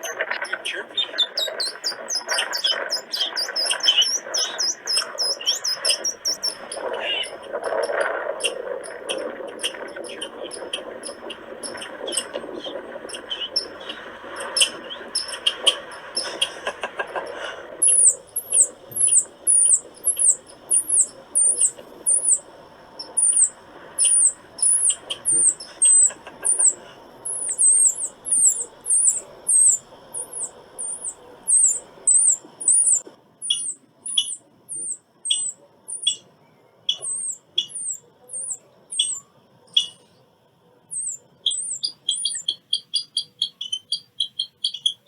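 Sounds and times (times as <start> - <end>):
rough scratchy noise: 0.0 - 33.2
squirrel chirping: 0.0 - 36.3, 36.9 - 40.2, 40.9 - 45.0.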